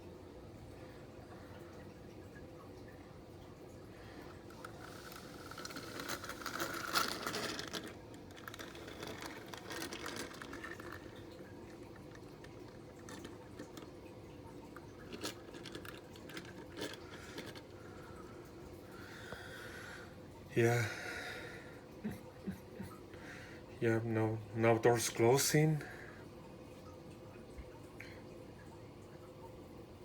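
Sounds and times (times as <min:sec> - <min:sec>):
plastic toy parts clicking and rattling: 0:04.4 - 0:14.0, 0:14.7 - 0:17.8.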